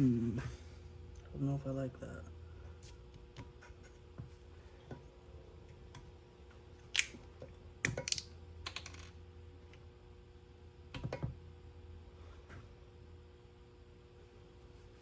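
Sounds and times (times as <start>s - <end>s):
faint steady hum: 0.0s - 15.0s
clicks and taps of metal parts: 7.8s - 9.1s.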